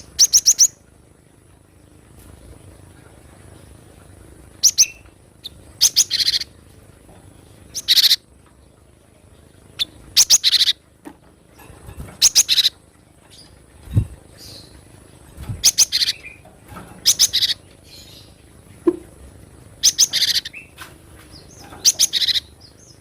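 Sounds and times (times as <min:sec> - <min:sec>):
bird calling: 0:07.7 - 0:08.2, 0:19.8 - 0:20.8, 0:21.8 - 0:22.6.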